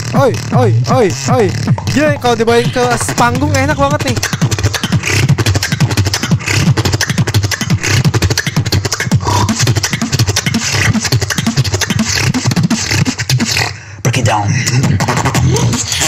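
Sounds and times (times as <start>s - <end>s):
deep falling bass sounds: 0.0s - 5.9s
beatboxing vocal percussion: 0.0s - 16.0s.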